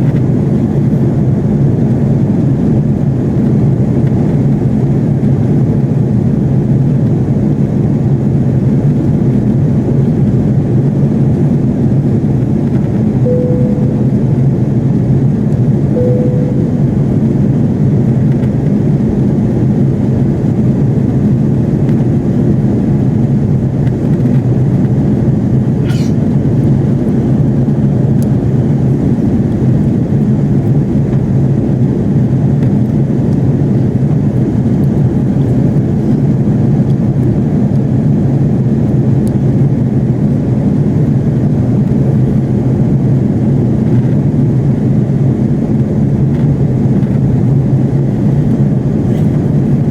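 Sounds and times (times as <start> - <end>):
airplane cabin drone: 0.0 - 49.9
brief steady tone: 13.2 - 15.0, 15.9 - 17.9.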